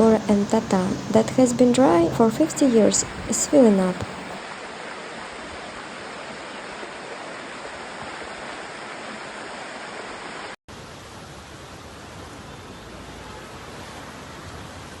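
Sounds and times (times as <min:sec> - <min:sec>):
floodwater rushing: 0:00.0 - 0:04.4.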